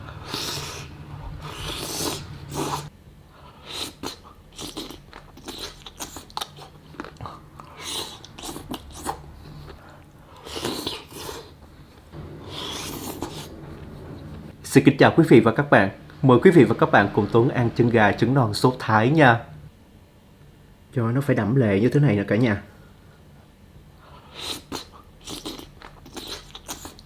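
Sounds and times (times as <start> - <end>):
chewing with crunches: 0.0 - 14.4, 24.1 - 27.0.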